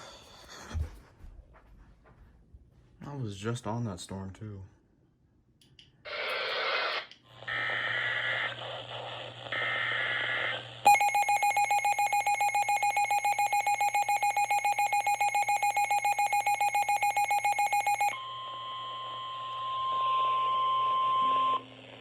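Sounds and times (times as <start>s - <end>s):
two-tone alert signal pulsing: 10.9s - 18.2s.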